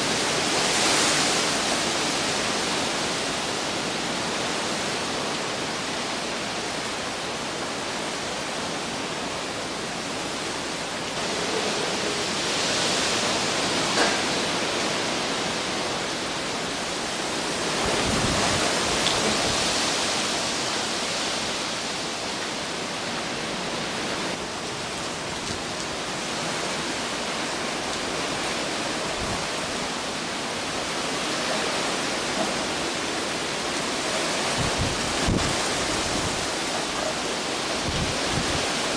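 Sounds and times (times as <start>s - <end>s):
hurricane wind and rain: 0.0s - 38.9s.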